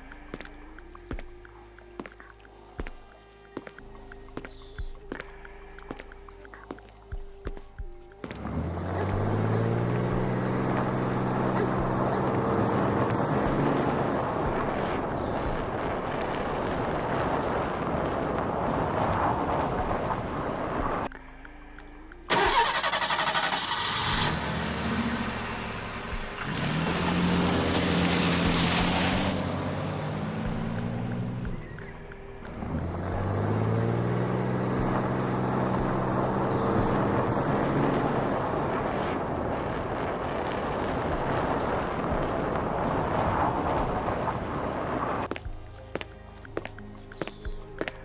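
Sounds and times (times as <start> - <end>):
car engine starting and revving: 8.2 - 21.1, 22.3 - 45.4
hissy car sound: 22.3 - 39.7.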